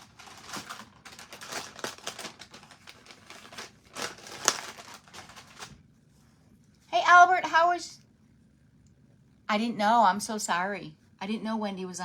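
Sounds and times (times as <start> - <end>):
scratchy rustles and crinkles: 0.0 - 6.9.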